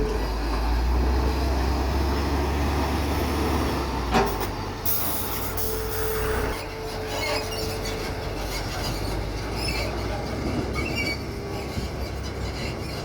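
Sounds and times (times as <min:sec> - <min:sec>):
excavator diesel engine running: 0:00.0 - 0:13.0
high metallic squeaks: 0:04.9 - 0:13.0.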